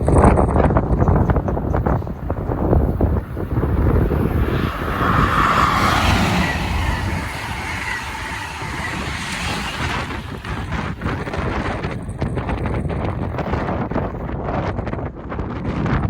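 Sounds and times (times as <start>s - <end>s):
train passing: 0.0s - 14.2s
wind buffeting microphone: 0.0s - 16.0s.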